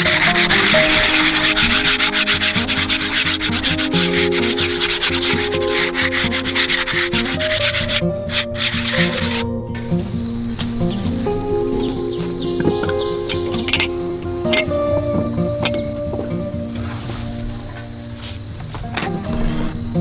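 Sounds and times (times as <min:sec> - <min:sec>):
rapid scraping: 0:00.0 - 0:14.8
background music with held notes: 0:00.0 - 0:20.0.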